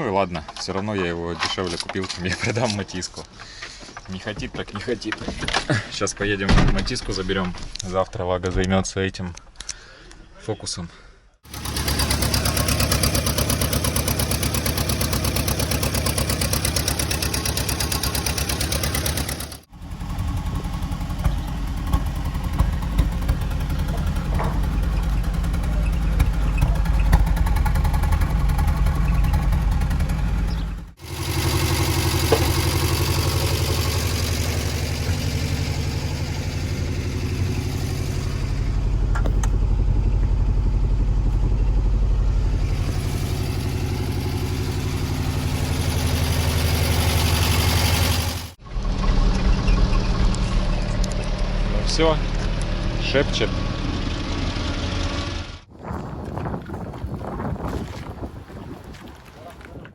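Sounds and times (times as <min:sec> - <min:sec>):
vehicle engine running: 0:11.5 - 0:58.2.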